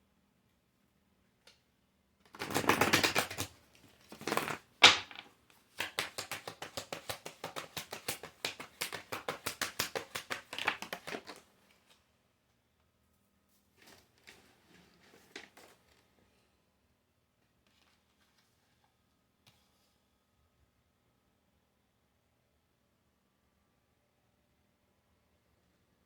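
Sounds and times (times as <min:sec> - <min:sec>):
cards being shuffled: 0:02.3 - 0:11.4.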